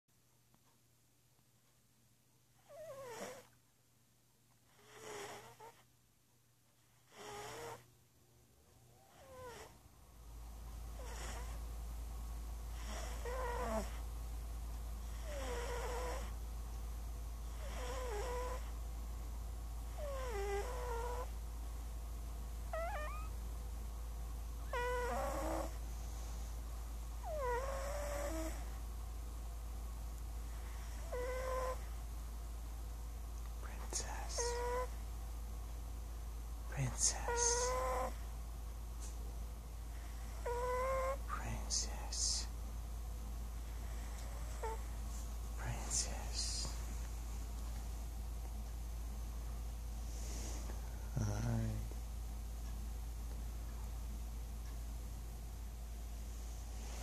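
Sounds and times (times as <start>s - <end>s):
steady low hum: 0.2s - 57.0s
cat snoring with squeaks: 2.6s - 3.6s, 4.7s - 5.9s, 6.8s - 7.9s, 9.0s - 9.8s, 10.9s - 11.6s, 12.7s - 14.1s, 15.0s - 16.4s, 17.4s - 18.8s, 19.9s - 21.4s, 22.7s - 23.4s, 24.6s - 25.8s, 27.2s - 28.8s, 30.5s - 32.0s, 33.7s - 35.0s, 36.8s - 38.3s, 39.9s - 42.5s, 43.7s - 45.0s.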